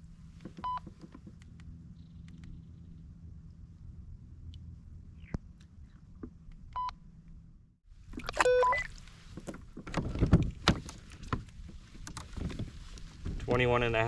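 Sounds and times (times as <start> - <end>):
short electronic beeps: 8.2 - 8.9.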